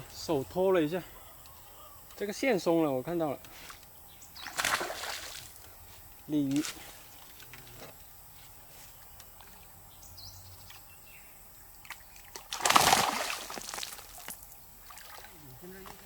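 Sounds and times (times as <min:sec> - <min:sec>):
loud water splash: 0:12.5 - 0:15.3.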